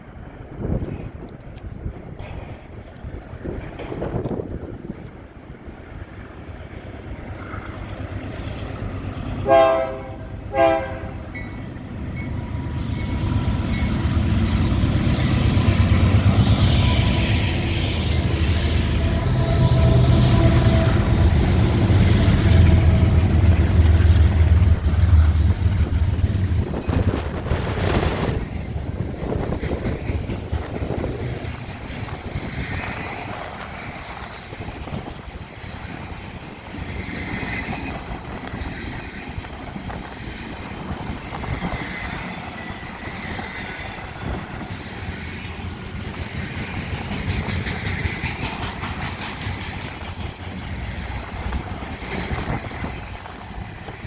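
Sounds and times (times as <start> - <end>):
train wheels clattering on rail: 0.0 - 10.0, 11.3 - 54.0
diesel locomotive engine rumble: 0.0 - 54.0.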